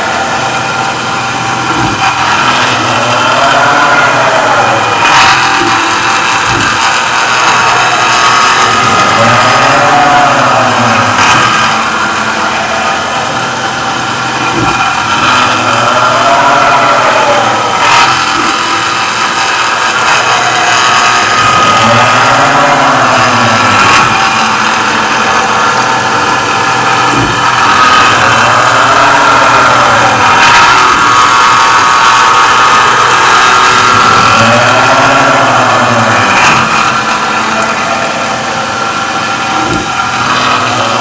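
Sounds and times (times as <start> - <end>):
milling machine cutting metal: 0.0 - 41.0.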